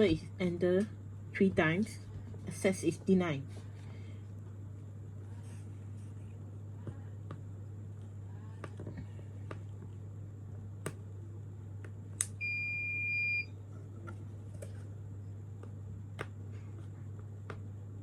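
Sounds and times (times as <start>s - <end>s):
door lock buzzer beep: 12.4s - 13.5s.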